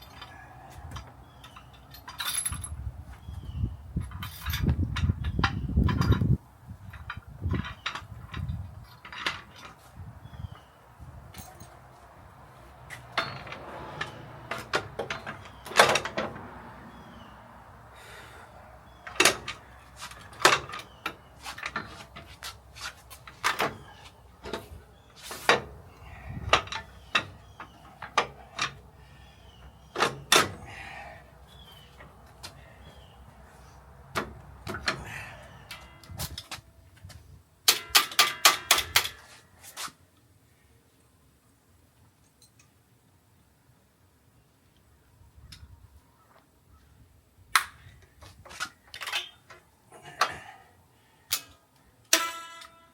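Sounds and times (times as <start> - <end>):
knocks and clanks: 12.9 - 16.6
handling noise: 18.9 - 39.9.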